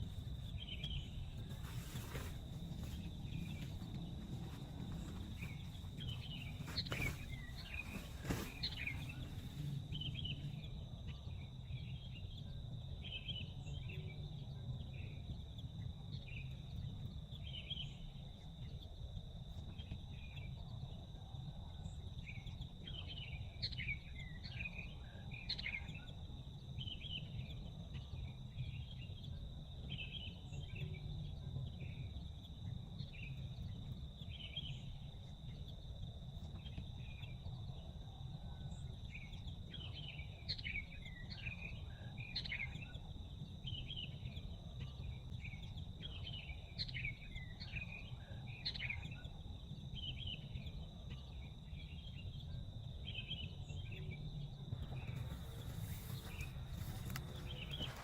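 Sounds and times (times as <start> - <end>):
birds chirping: 0.0 - 19.0, 38.6 - 58.0
low background rumble: 0.0 - 58.0.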